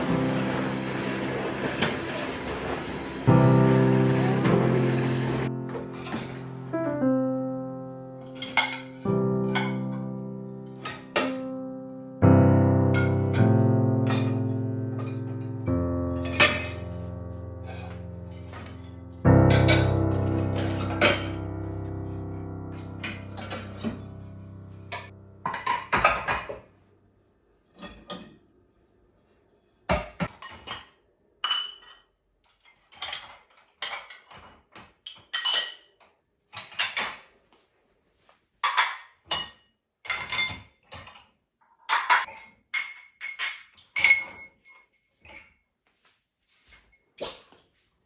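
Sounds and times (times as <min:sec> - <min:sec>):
dishes and cutlery clinking: 0:00.0 - 0:06.7, 0:08.4 - 0:10.0, 0:10.8 - 0:11.6, 0:14.1 - 0:21.7, 0:22.8 - 0:24.2, 0:24.9 - 0:26.7, 0:29.8 - 0:37.3, 0:38.6 - 0:47.6.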